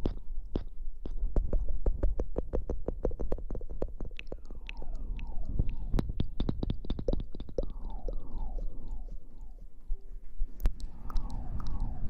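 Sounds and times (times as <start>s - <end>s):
low rumble: 4.2s - 12.0s.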